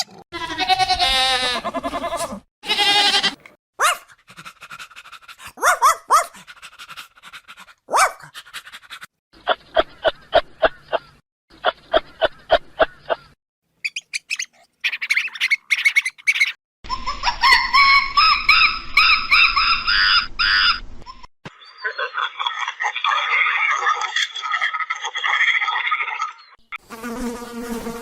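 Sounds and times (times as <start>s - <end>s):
animal yelping calls: 5.4s - 6.4s, 7.9s - 9.0s, 13.8s - 16.6s, 17.2s - 20.8s.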